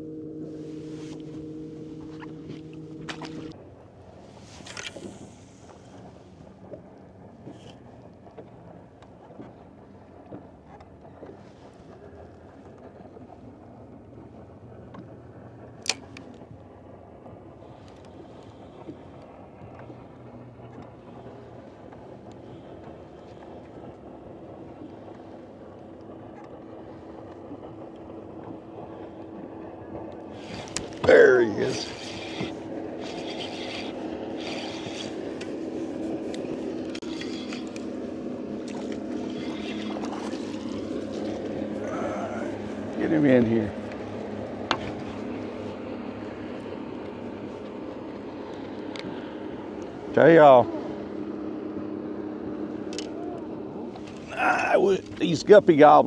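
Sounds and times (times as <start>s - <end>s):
low steady hum: 0.0s - 56.0s
water noise: 0.0s - 56.0s
wind: 0.0s - 56.0s
scrapes and clicks: 30.4s - 37.9s.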